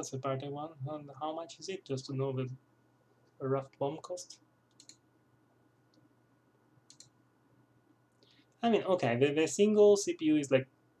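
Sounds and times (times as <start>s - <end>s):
faint short clicks: 6.9s - 7.2s.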